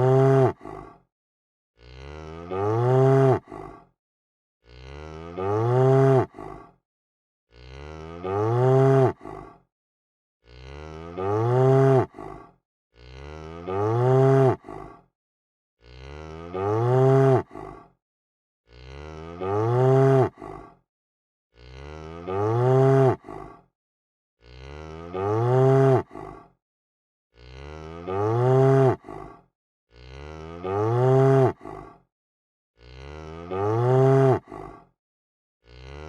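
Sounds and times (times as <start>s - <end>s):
cow mooing: 0.0s - 0.6s, 1.8s - 3.5s, 4.7s - 6.3s, 7.5s - 9.2s, 10.5s - 12.1s, 13.0s - 14.7s, 15.8s - 17.5s, 18.7s - 20.4s, 21.6s - 23.3s, 24.4s - 26.2s, 27.4s - 29.1s, 29.9s - 31.6s, 32.8s - 34.5s, 35.7s - 36.0s.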